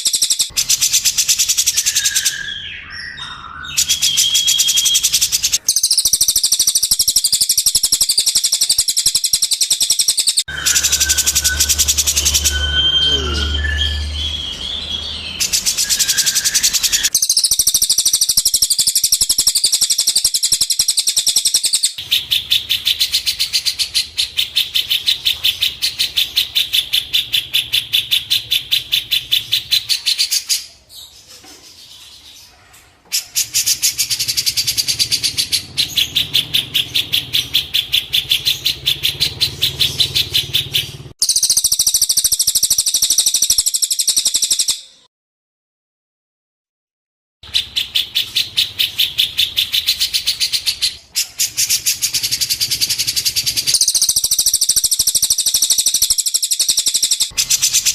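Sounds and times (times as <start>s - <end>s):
songbird chirping rapidly: 0.0s - 45.1s, 47.4s - 57.9s.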